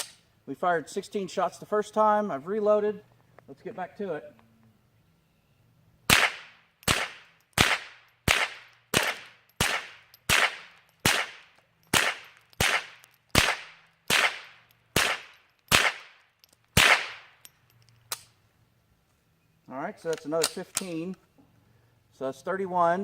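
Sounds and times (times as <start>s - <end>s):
gunshots with echo: 6.1s - 11.4s, 12.0s - 16.0s.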